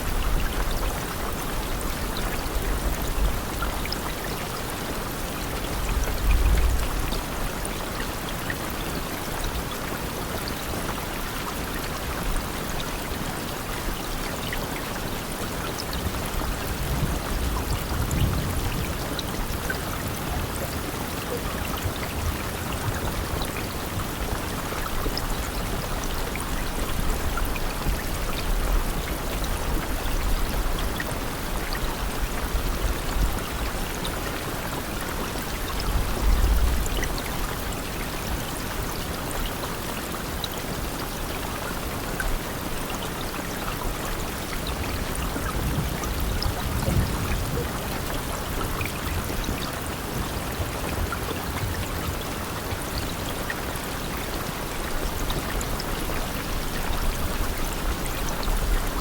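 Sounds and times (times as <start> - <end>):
heavy rain falling: 11.4 - 59.0.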